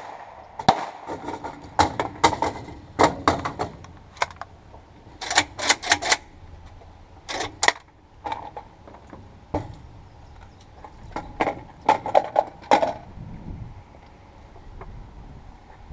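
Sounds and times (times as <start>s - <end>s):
sharp clicks and knocks: 0.0s - 4.5s, 5.1s - 9.8s.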